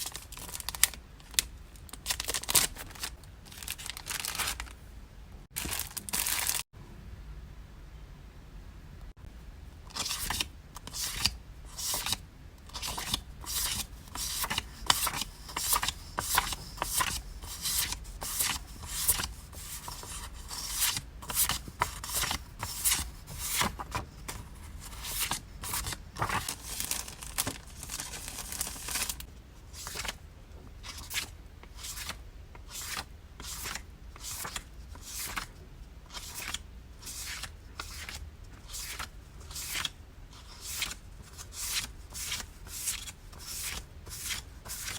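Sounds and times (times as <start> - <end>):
paper and plastic rustling: 0.0 - 4.8, 5.6 - 6.7, 11.1 - 30.2.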